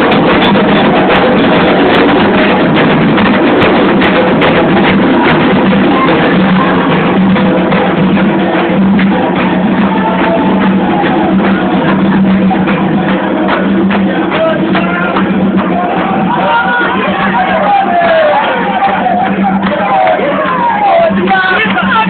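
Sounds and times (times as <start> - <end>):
hand drums beating: 0.0 - 22.0
group chanting: 4.6 - 22.0.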